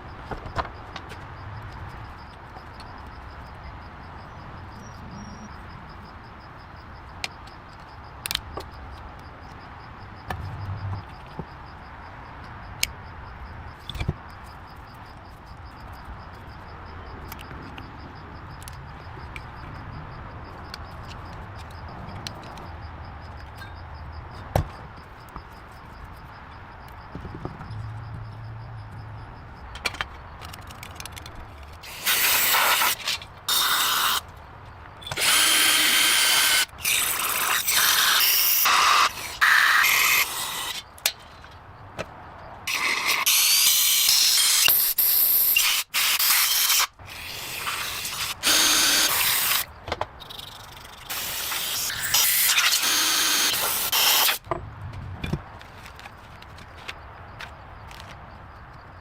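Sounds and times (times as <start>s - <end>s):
low workshop background: 42.7s - 54.6s.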